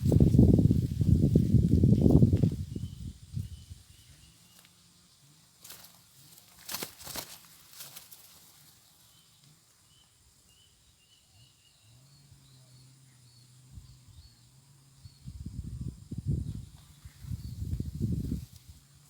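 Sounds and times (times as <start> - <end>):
low rumbling on microphone: 0.0 - 3.9, 15.0 - 18.8.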